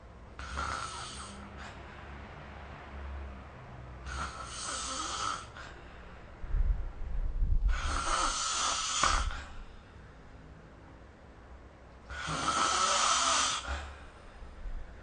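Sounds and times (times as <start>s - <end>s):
person snoring: 0.4s - 1.7s, 4.0s - 5.8s, 7.7s - 9.6s, 12.1s - 14.0s
quiet breathing: 0.4s - 2.7s, 3.9s - 6.9s, 7.5s - 10.7s, 12.0s - 15.0s.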